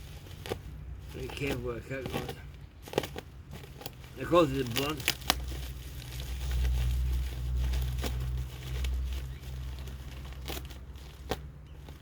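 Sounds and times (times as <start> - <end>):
packaging crinkling and tearing: 0.0 - 12.0.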